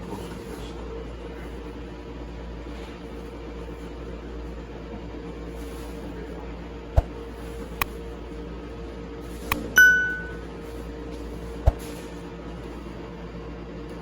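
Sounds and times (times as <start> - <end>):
steady low hum: 0.0 - 14.0
loud metallic ping: 9.7 - 10.4.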